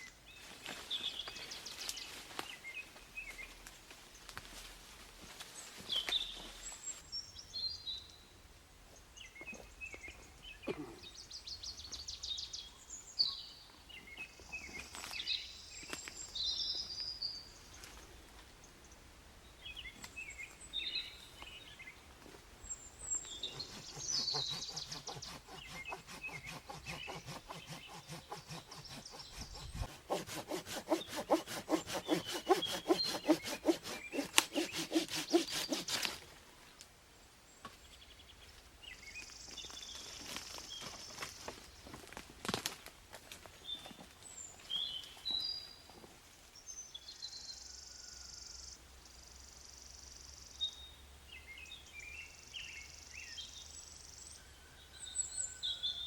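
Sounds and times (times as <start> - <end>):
birds chirping: 18.7 - 36.2
hand saw cutting wood: 23.2 - 36.2.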